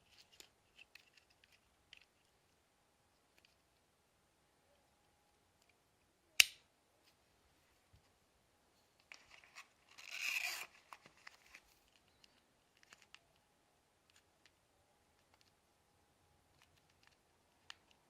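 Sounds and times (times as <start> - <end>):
sharp click: 6.4 - 6.6
packaging rustling and scraping: 9.1 - 12.0.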